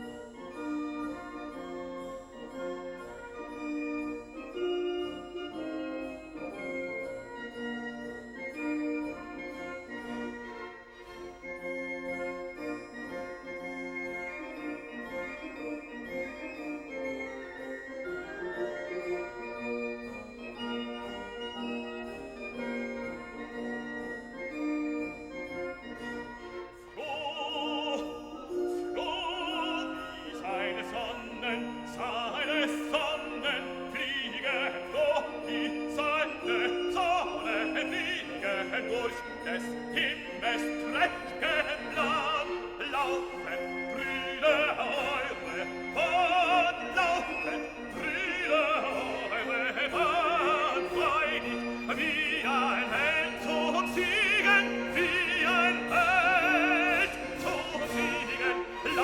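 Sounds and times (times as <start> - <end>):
orchestral accompaniment: 0.0 - 59.0
person singing opera: 26.9 - 59.0.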